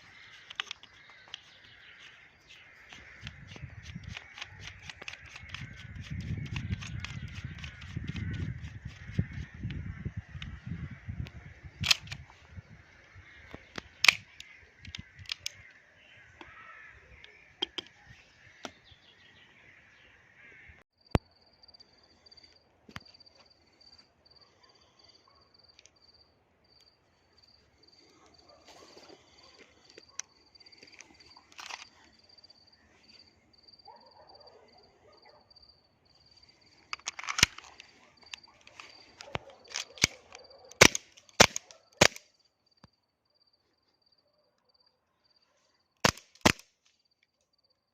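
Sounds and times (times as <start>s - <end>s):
airsoft pistol shots: 40.8s - 42.2s.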